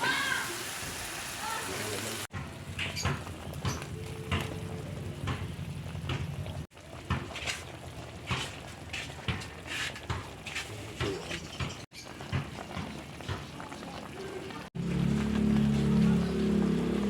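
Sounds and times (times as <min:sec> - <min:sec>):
spatula scraping a pan: 0:07.2 - 0:11.6.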